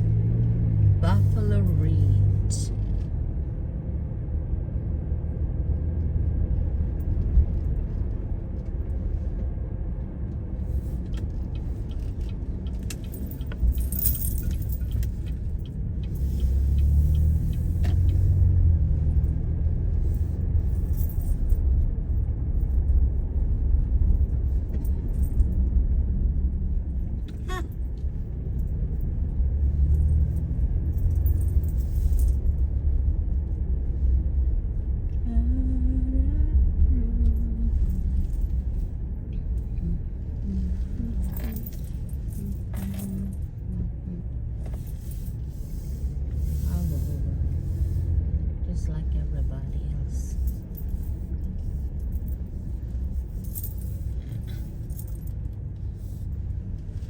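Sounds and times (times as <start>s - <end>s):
vehicle rumble from inside: 0.0s - 57.0s
light rattling: 10.8s - 18.5s.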